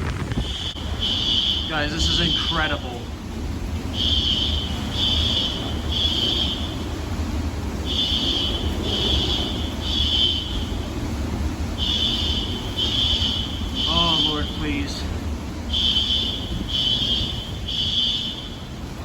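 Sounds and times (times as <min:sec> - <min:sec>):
low rumble of wind: 0:00.0 - 0:19.0
fire alarm high beeps: 0:00.4 - 0:03.0, 0:04.0 - 0:07.0, 0:07.8 - 0:10.8, 0:11.8 - 0:15.0, 0:15.7 - 0:18.8.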